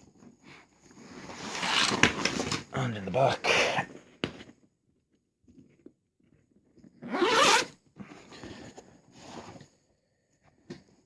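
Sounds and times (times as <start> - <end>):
zipper being pulled: 1.3 - 2.1, 7.0 - 7.7.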